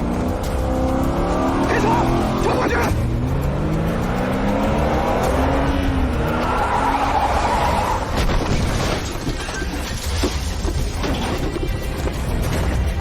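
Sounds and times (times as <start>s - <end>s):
car engine revving: 0.0s - 8.4s.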